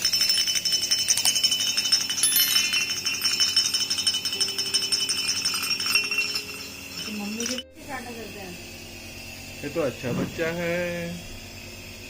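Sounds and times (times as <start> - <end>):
metallic jingling and rattling: 0.0 - 7.7.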